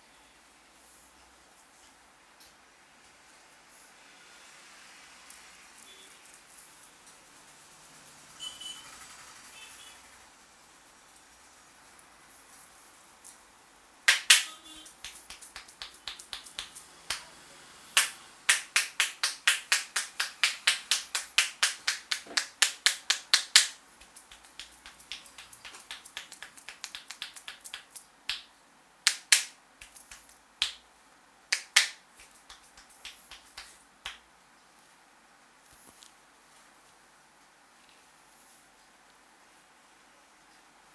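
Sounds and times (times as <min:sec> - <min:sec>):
hands snapping during massage: 0:14.1 - 0:17.3, 0:18.0 - 0:30.8, 0:31.5 - 0:34.2.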